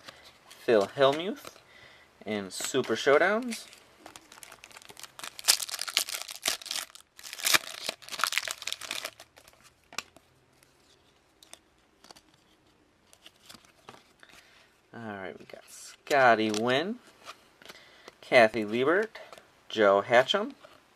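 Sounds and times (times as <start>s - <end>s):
cards clicking and rustling: 2.5s - 10.2s
wrapper tearing and crinkling: 3.4s - 9.6s.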